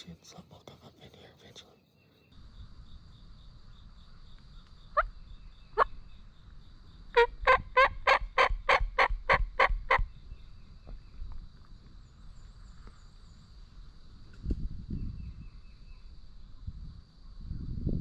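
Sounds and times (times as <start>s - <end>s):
turkey call yelps: 7.2s - 10.0s.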